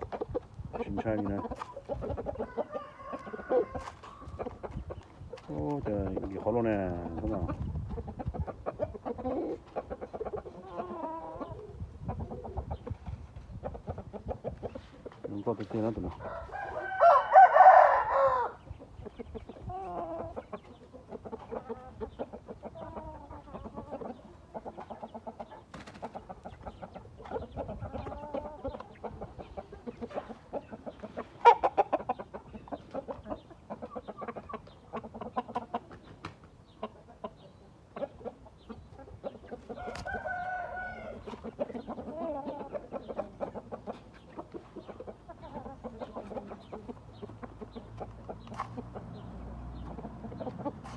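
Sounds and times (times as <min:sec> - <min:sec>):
rooster clucks and clicks: 0:00.0 - 0:50.9
rooster crowing: 0:16.2 - 0:18.6, 0:39.8 - 0:41.3.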